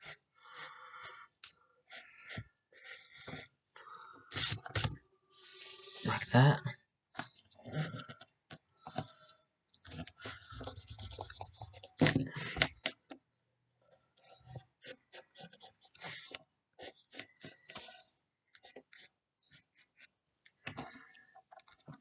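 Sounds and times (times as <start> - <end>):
pencil scratching on paper: 0.0 - 1.1, 1.9 - 6.1, 9.9 - 13.2, 13.8 - 22.0.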